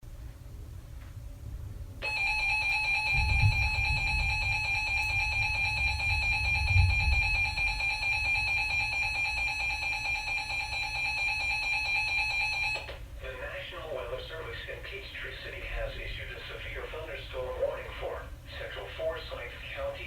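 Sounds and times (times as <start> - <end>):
electronic alert tone: 2.0 - 12.9
low rumble: 3.0 - 8.9.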